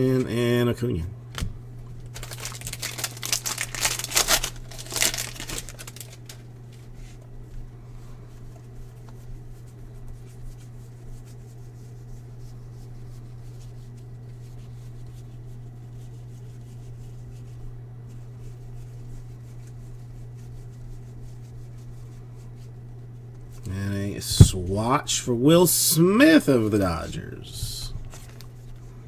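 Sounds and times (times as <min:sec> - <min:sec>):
low hum: 0:23.7 - 0:28.0.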